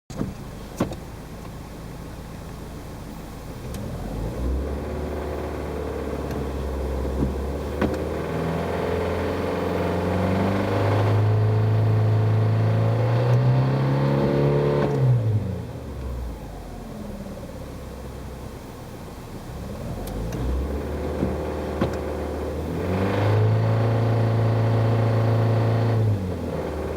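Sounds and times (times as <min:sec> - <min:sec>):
engine rattling noise: 0:00.1 - 0:12.3, 0:19.6 - 0:26.9
car engine revving: 0:00.5 - 0:26.9.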